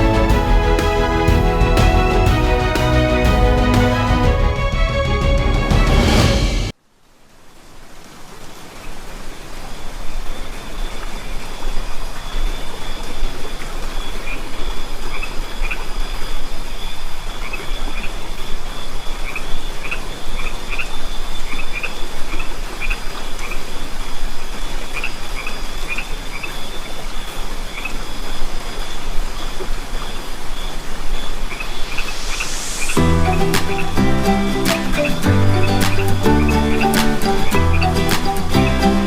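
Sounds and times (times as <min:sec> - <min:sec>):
steady rain: 0:00.0 - 0:39.0.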